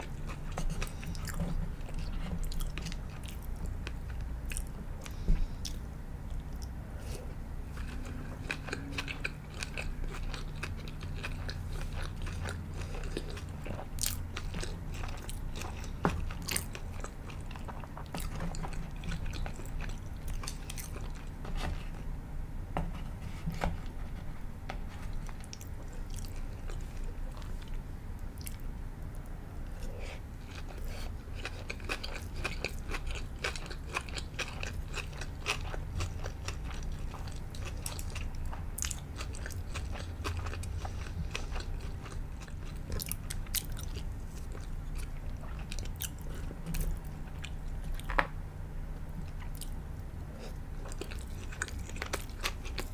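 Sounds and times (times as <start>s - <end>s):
chewing and biting food: 0.0s - 22.0s, 24.9s - 48.4s, 49.0s - 52.9s
steady low hum: 0.0s - 52.9s.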